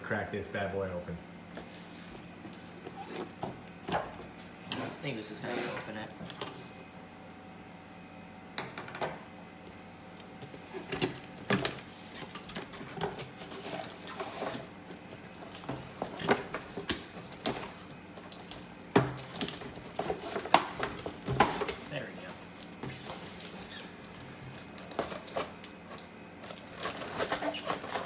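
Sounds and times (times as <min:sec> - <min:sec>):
packaging rustling: 0:10.5 - 0:28.0
box packaging clicks and knocks: 0:10.9 - 0:22.0.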